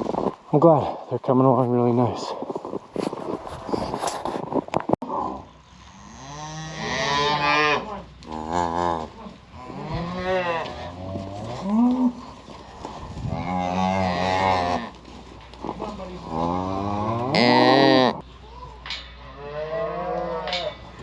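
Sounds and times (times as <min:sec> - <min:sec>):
cattle mooing: 0:05.3 - 0:12.3, 0:13.2 - 0:15.0, 0:16.2 - 0:18.2, 0:19.2 - 0:20.8.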